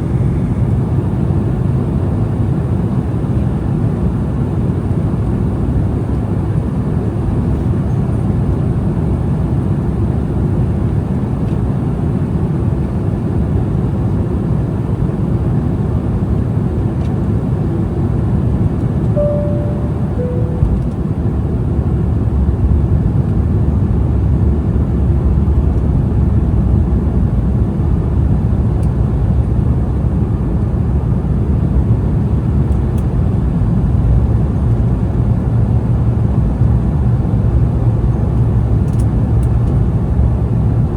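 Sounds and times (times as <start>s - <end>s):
airliner cabin roar: 0.0s - 1.6s, 19.2s - 21.7s
two-note cabin chime: 19.2s - 21.3s.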